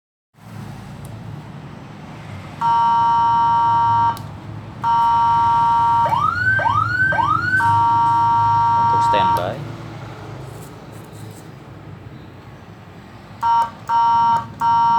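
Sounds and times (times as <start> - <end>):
electronic siren tones: 2.6 - 4.2, 4.8 - 9.5, 13.4 - 14.9.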